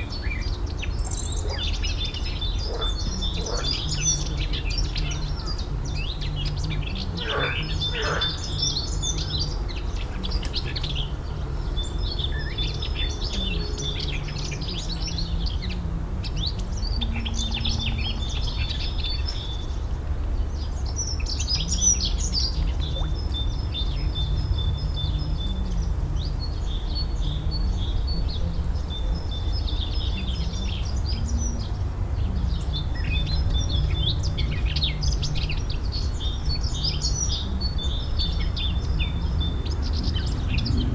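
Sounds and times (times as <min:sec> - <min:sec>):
songbirds singing: 0:00.0 - 0:40.9
steady low rumble: 0:14.5 - 0:40.9.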